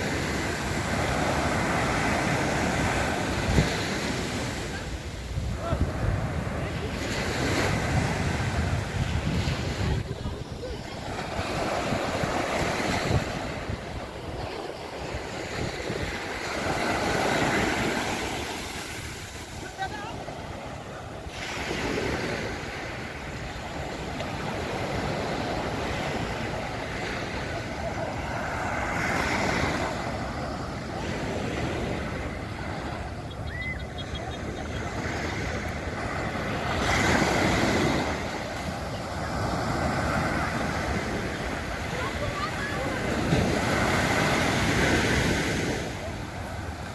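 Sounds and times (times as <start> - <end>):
wind buffeting microphone: 0.0 - 45.7
waves washing onto beach: 0.0 - 46.9.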